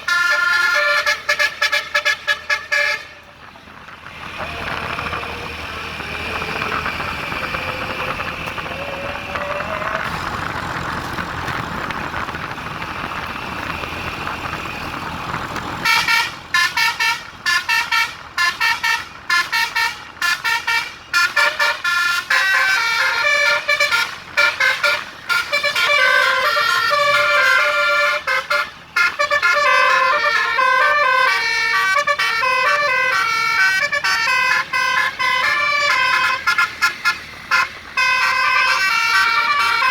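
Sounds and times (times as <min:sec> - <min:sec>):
musical bus air horn: 0:00.0 - 0:03.4, 0:15.8 - 0:39.9
vehicle noise: 0:00.0 - 0:39.9.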